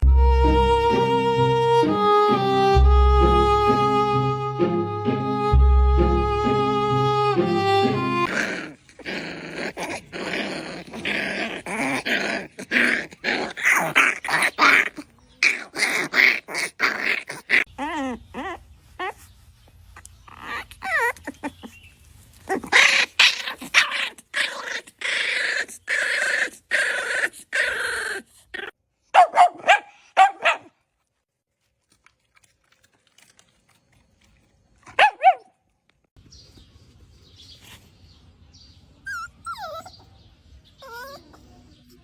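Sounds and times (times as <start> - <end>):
puppy yapping and yelping: 12.7 - 21.9, 22.5 - 30.7, 34.9 - 35.5, 39.0 - 40.2, 40.8 - 41.5.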